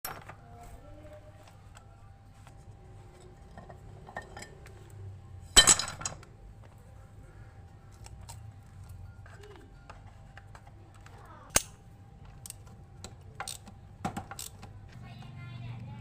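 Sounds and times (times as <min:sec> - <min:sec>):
metal tools clinking: 0:03.2 - 0:04.8, 0:05.5 - 0:06.3.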